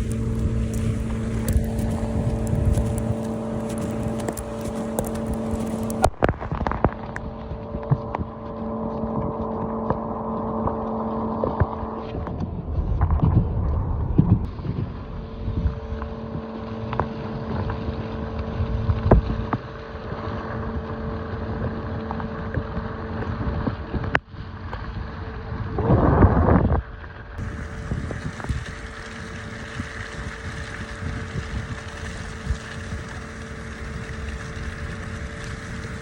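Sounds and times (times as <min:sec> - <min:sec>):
car engine and road rumble: 0:00.0 - 0:06.2
wind buffeting microphone: 0:00.0 - 0:06.2.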